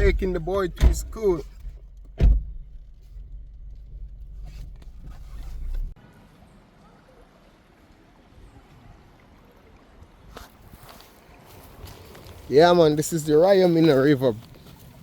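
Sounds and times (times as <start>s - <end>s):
car cabin rumble: 0.0s - 6.0s
thump: 0.8s - 2.8s.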